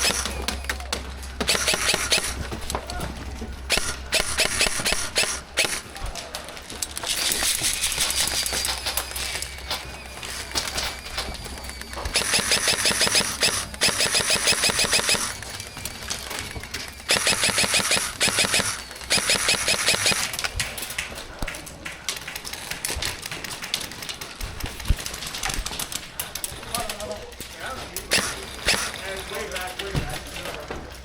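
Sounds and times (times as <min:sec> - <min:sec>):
airsoft rifle firing bursts: 0:00.0 - 0:02.6, 0:03.7 - 0:06.0, 0:11.7 - 0:20.6, 0:28.1 - 0:29.3.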